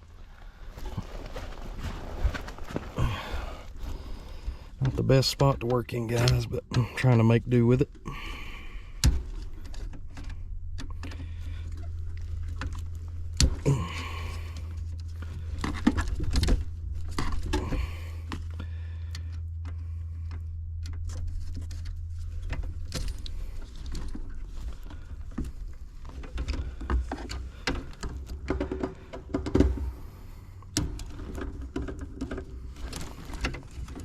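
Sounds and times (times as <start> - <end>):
steady low hum: 0.0 - 34.0.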